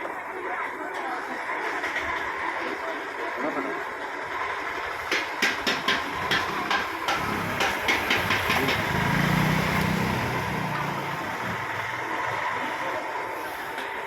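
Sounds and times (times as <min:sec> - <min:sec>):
sharp knocks: 0:05.1 - 0:09.2.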